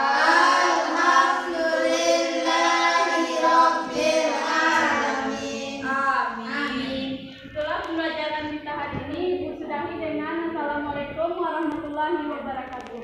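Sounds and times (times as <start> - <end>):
children chanting a prayer: 0.0 - 7.5.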